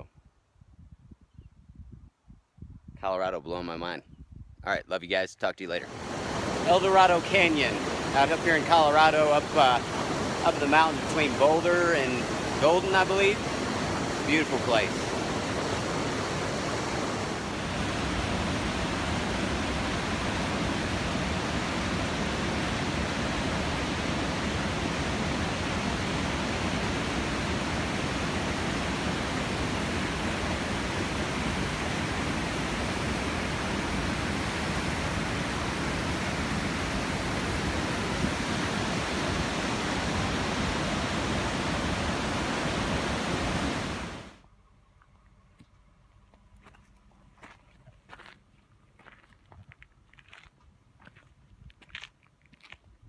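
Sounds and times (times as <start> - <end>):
fast-flowing creek rushing: 5.9 - 44.4.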